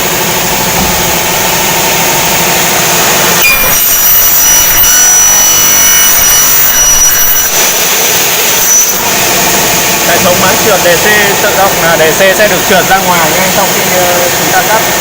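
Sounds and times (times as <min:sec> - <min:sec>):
saw motors running: 0:00.0 - 0:15.0
saw blades ringing through aluminium: 0:03.3 - 0:09.6.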